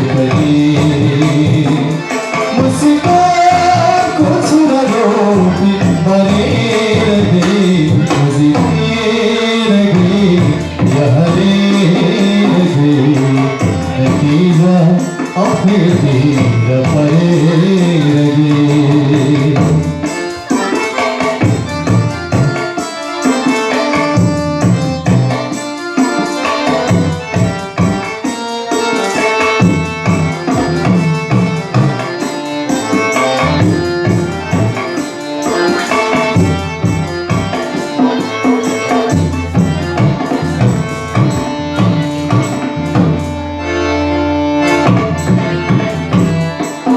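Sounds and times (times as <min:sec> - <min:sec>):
person singing: 0:00.0 - 0:20.2
tabla drumming: 0:00.0 - 0:46.9.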